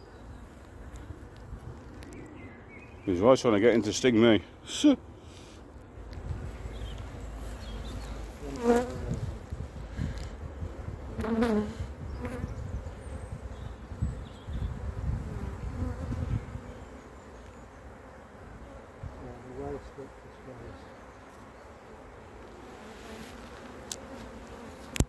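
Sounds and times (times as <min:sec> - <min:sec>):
honeybees buzzing: 0:05.9 - 0:25.0
bee flying past: 0:06.4 - 0:17.7, 0:21.3 - 0:25.0.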